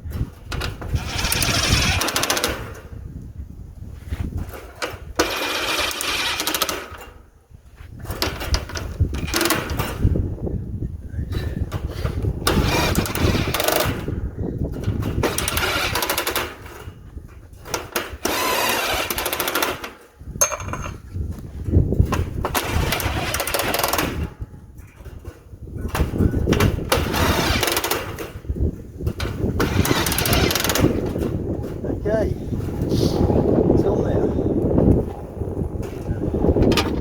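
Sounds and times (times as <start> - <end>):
power drill drilling metal: 0.9 - 2.6, 5.2 - 7.0, 9.2 - 9.7, 12.5 - 13.9, 15.2 - 16.6, 18.2 - 20.9, 22.6 - 24.2, 27.0 - 28.2, 29.6 - 31.0.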